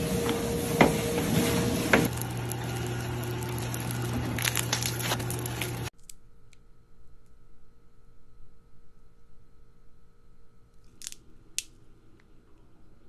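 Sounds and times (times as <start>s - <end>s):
faint steady hum: 2.0s - 13.0s
slime squishing and crackling: 2.1s - 5.9s.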